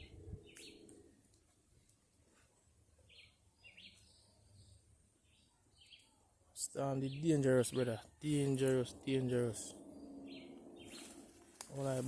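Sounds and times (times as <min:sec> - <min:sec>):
faint bird chirps: 0:03.0 - 0:11.5.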